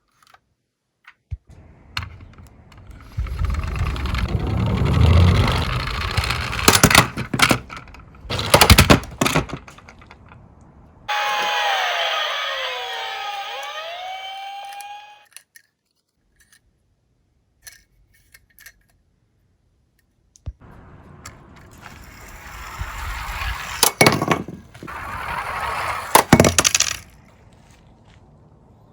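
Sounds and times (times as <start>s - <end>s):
toy car clattering down slope: 2.0s - 16.7s, 21.2s - 27.3s
police siren wailing: 11.1s - 15.3s.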